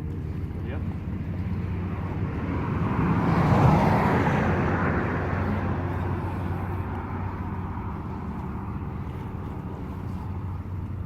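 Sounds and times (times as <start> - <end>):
rushing noise passing by: 1.7 - 9.6.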